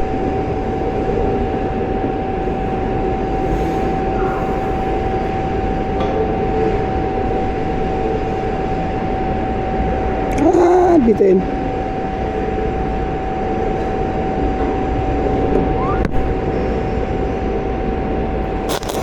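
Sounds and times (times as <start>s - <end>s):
constant hum: 0.0s - 19.0s
welding arc running: 18.5s - 19.0s.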